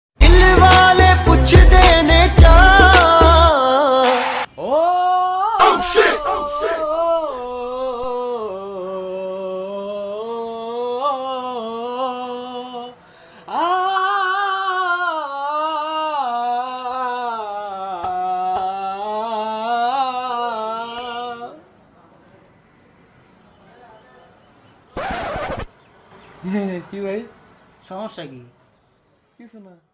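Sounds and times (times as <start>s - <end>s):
man singing drawn-out chant: 0.2s - 21.8s.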